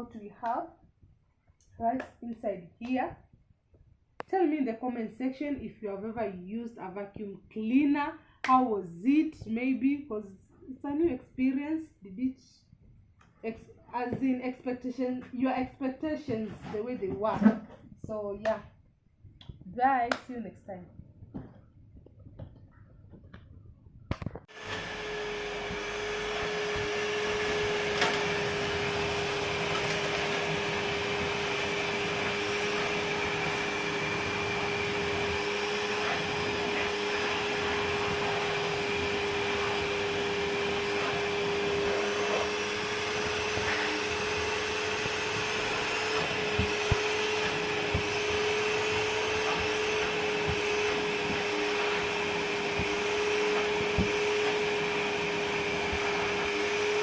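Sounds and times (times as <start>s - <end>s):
vacuum cleaner running: 24.5s - 57.0s.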